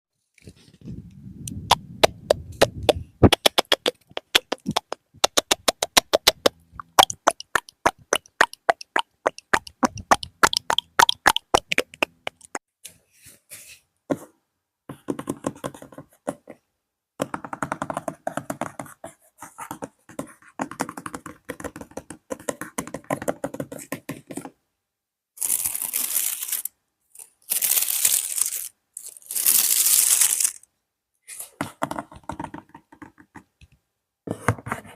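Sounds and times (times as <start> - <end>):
rapid sharp tapping: 2.0 - 12.6.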